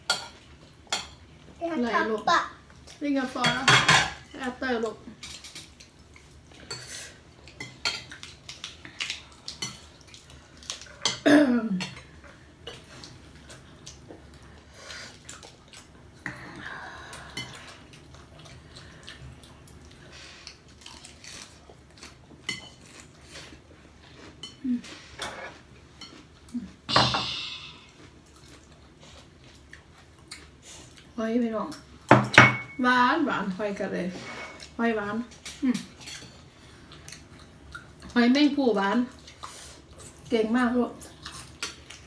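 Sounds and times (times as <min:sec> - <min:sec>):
cutlery clinking on plates: 0:03.4 - 0:04.3.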